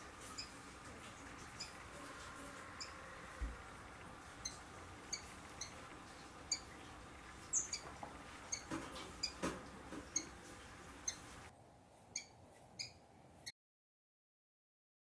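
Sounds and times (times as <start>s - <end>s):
sparrow chirping: 0.3s - 0.6s, 4.4s - 5.8s, 6.5s - 6.8s, 7.4s - 9.4s, 10.1s - 10.4s, 11.0s - 11.4s, 12.1s - 13.0s.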